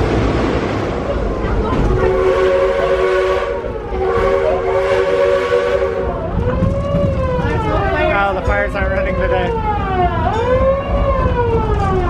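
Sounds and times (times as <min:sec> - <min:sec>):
steam locomotive whistle: 0:02.1 - 0:06.2.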